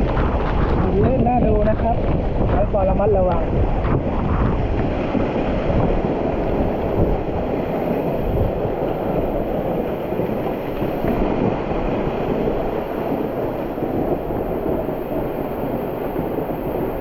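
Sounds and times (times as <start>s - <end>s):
waterfall roaring: 3.8s - 17.0s.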